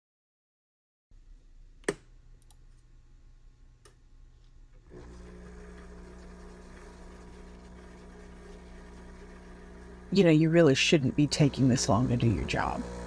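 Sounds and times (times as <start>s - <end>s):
espresso machine humming: 4.9s - 13.0s.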